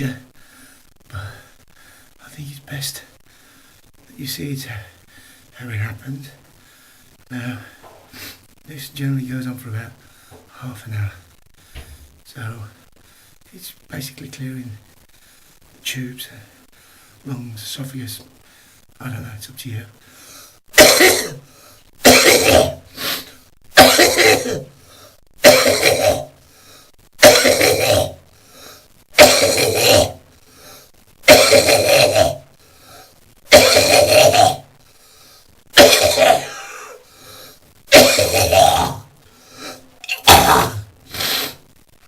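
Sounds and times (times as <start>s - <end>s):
man coughing hard: 20.8s - 21.4s, 22.0s - 22.8s, 23.8s - 24.7s, 25.4s - 26.3s, 27.2s - 28.2s, 29.2s - 30.2s, 31.3s - 32.4s, 33.5s - 34.6s, 35.8s - 37.0s, 37.9s - 39.0s.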